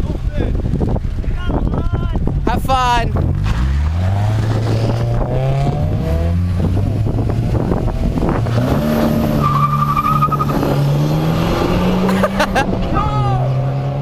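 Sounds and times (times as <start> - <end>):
car engines accelerating hard: 3.2 - 14.0
tire squeal: 8.9 - 10.9.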